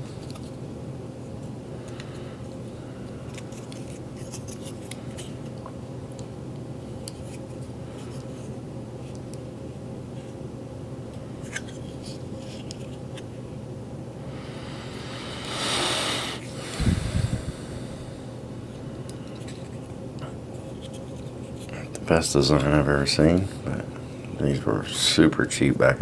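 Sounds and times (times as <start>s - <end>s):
steady low hum: 13.6s - 20.7s.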